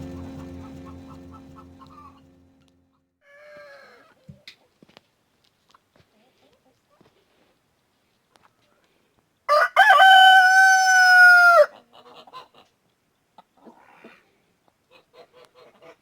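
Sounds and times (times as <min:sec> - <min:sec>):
faint hen clucks: 0:03.2 - 0:04.6, 0:10.1 - 0:16.0
rooster crowing: 0:09.5 - 0:11.7.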